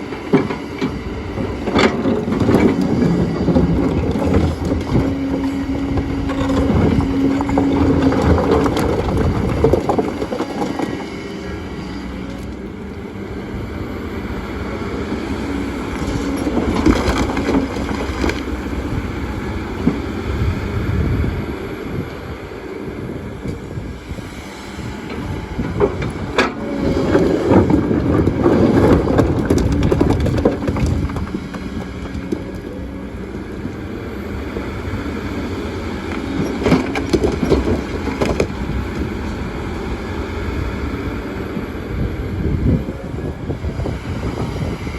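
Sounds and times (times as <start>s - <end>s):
excavator diesel engine under load: 0.0s - 44.9s
stones knocking against bucket: 25.9s - 32.8s.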